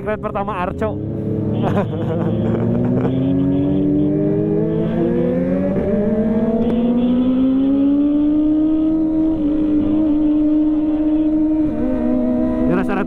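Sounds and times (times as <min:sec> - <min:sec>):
motorcycle engine accelerating: 0:00.8 - 0:13.0.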